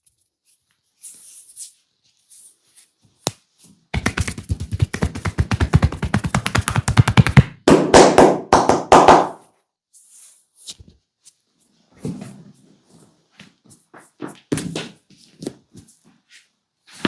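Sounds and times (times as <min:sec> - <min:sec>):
hands rubbing and scratching: 0:00.0 - 0:07.2
rapid hand tapping: 0:04.0 - 0:09.4.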